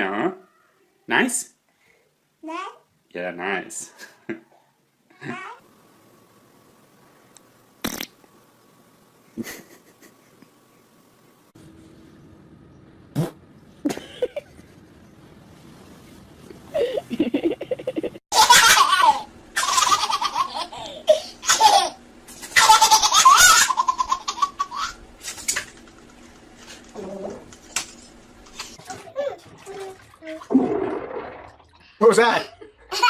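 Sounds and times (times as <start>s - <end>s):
baby laughing: 16.8s - 25.6s.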